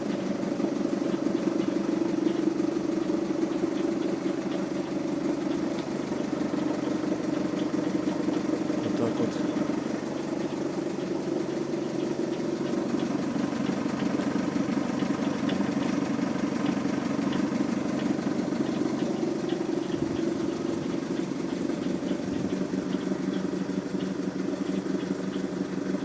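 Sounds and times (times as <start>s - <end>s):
diesel engine idling: 0.0s - 26.0s
light engine ticking: 0.0s - 26.0s.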